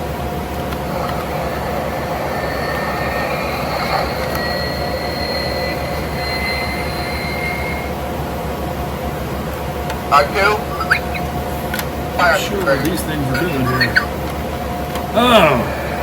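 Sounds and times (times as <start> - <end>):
toy spaceship engine effect: 0.6 - 8.1, 10.1 - 11.6, 12.2 - 14.5.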